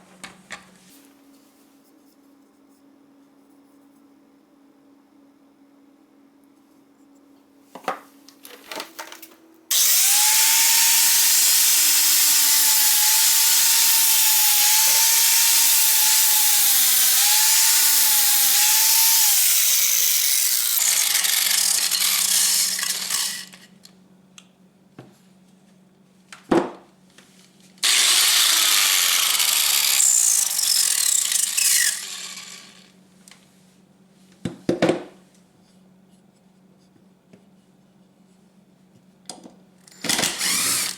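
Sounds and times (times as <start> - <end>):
small power tool whining: 9.7 - 23.8, 27.8 - 32.9, 39.9 - 40.9.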